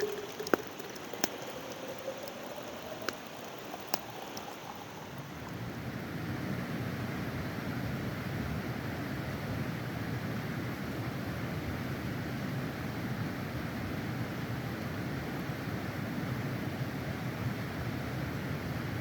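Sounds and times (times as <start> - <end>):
campfire crackling: 0.0 - 5.8
campfire popping: 0.0 - 5.8.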